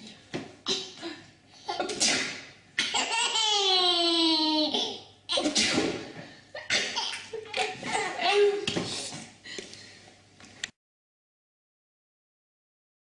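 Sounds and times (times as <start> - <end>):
baby laughing: 2.8 - 5.5.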